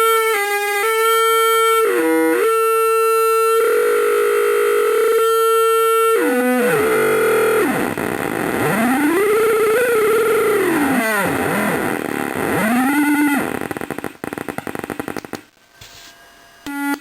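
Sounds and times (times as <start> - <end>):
wailing electronic tone: 0.0 - 15.0, 16.6 - 17.0
stepping sliding electronic pitches: 0.0 - 15.3
buzzy electronic drone tone: 0.0 - 17.0.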